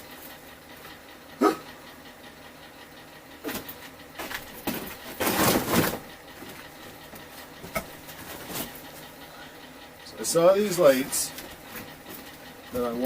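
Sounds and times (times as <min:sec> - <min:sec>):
rustling scrape: 0:08.0 - 0:09.1.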